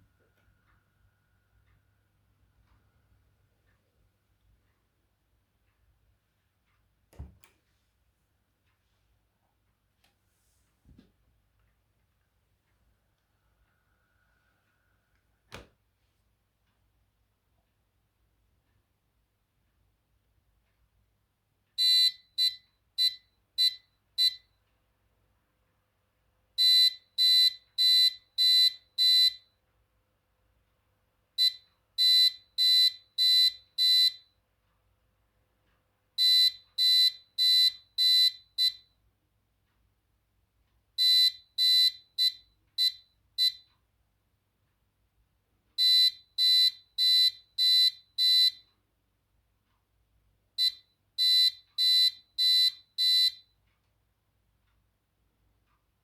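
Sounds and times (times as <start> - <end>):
electronic buzzer beeping morse code: 21.8 - 24.4, 26.6 - 29.4, 31.4 - 34.2, 36.2 - 38.8, 41.0 - 43.6, 45.8 - 48.6, 50.6 - 53.4.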